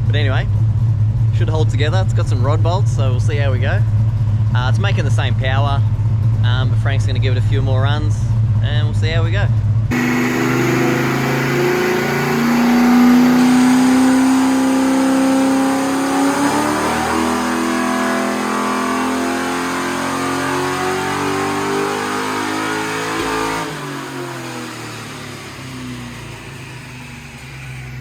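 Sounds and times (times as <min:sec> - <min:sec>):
car engine revving under load: 0:09.8 - 0:28.0.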